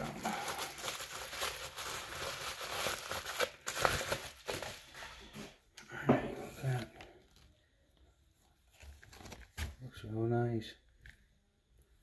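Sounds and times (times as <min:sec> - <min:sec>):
packaging rustling and crinkling: 0:00.0 - 0:05.5, 0:08.6 - 0:09.9.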